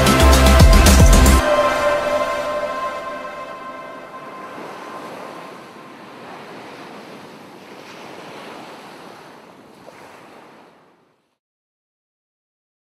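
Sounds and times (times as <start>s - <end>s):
sea waves washing on beach: 1.4s - 11.4s.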